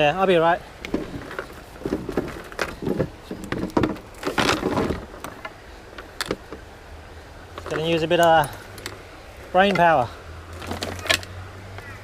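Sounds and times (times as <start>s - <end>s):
kayak scraping on rocks: 0.2s - 6.6s.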